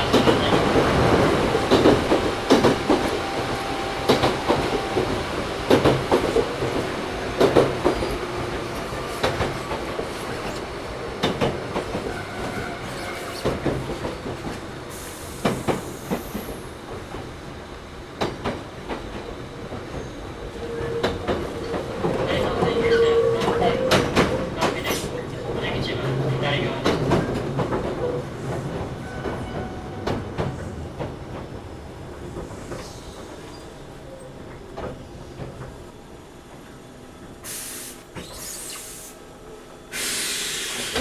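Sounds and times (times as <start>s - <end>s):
wheels clacking over rail joints: 0.0s - 14.7s
train interior rumble: 0.0s - 41.0s.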